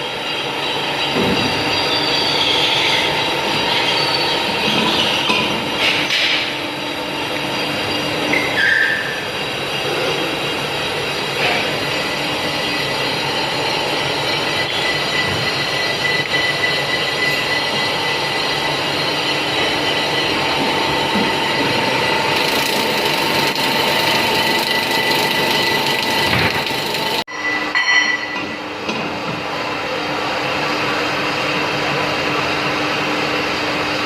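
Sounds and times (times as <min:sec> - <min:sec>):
faint machine whines: 0:00.0 - 0:28.9
short high squeal: 0:07.6 - 0:10.2
lathe running: 0:09.1 - 0:27.3.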